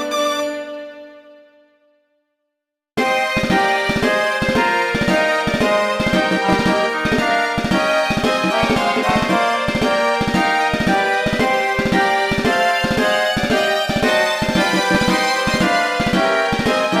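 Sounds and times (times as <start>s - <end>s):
bass and drum pattern: 3.4s - 17.0s
synthesized ringtone melody: 3.8s - 17.0s.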